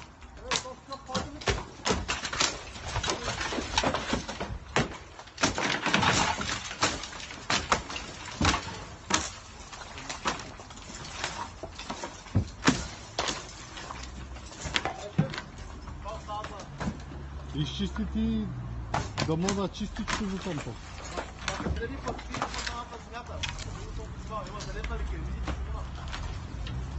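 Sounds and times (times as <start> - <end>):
demolition knocks and clattering: 0.0 - 17.9, 18.8 - 26.9
crash of breaking material: 0.4 - 15.8.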